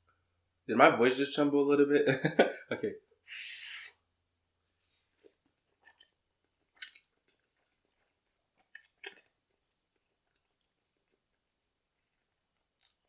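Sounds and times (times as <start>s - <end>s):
person eating noodles: 3.3s - 3.9s, 6.7s - 10.7s
faint mouth sounds: 3.3s - 4.0s.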